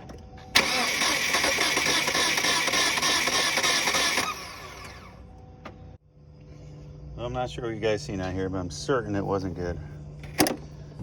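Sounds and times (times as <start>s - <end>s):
car engine cranking: 0.5s - 5.1s
engine spinning down whir: 0.5s - 5.4s.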